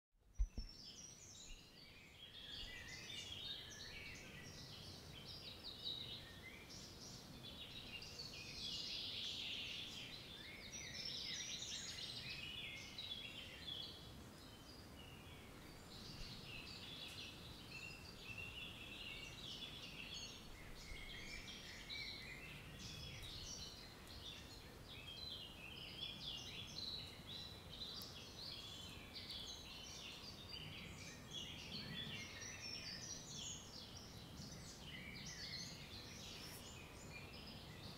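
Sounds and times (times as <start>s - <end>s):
small birds chirping: 0.2s - 37.9s.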